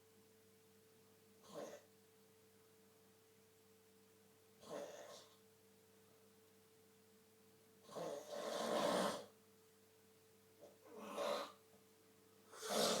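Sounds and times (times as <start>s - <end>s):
man snoring: 8.0s - 9.3s, 12.6s - 13.0s.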